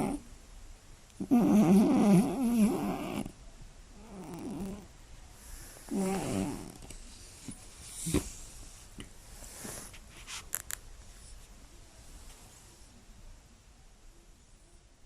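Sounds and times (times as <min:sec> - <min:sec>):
cat snoring: 0:00.0 - 0:00.2, 0:01.2 - 0:03.4, 0:04.0 - 0:06.9.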